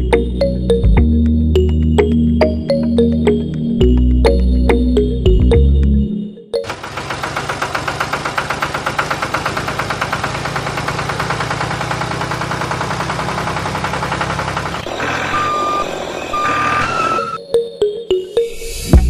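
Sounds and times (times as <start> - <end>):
tractor engine chugging: 6.6 - 17.4
reversing beep: 14.8 - 17.4.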